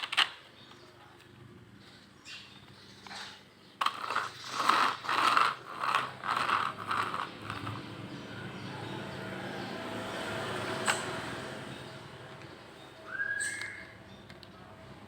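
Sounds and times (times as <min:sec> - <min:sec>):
plastic toy ratchet clattering: 0:03.8 - 0:07.8.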